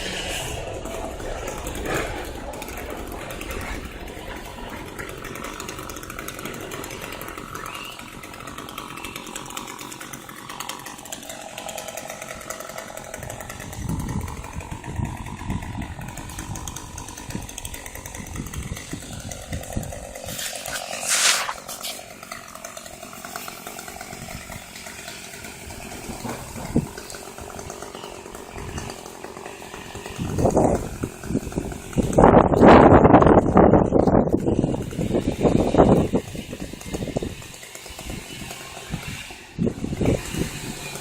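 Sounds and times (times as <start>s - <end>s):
chainsaw running: 0.0s - 41.0s.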